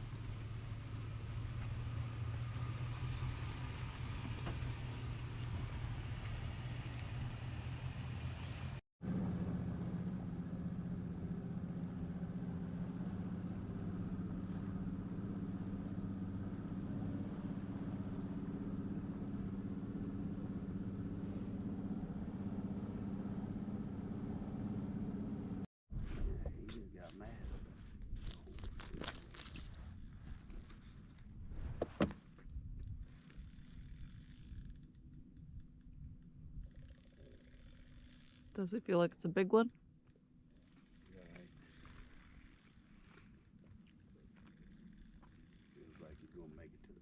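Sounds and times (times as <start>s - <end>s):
engine humming: 0.0s - 32.2s.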